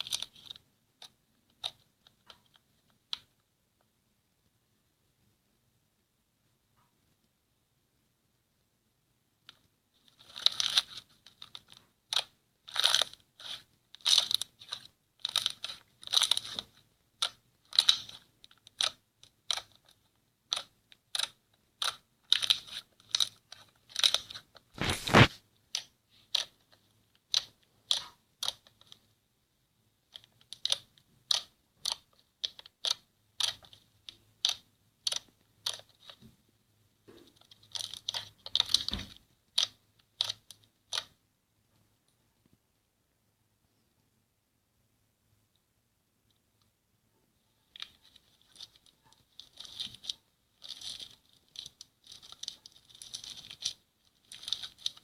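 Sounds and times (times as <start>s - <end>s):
crunchy slime crackling: 10.2s - 25.4s, 47.8s - 55.0s.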